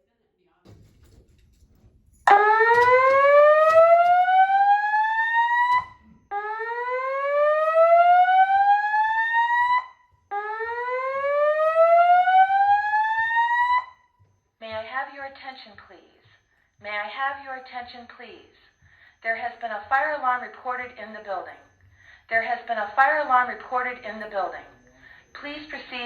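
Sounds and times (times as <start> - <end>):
rising whoop alarm tone: 2.3 - 13.9.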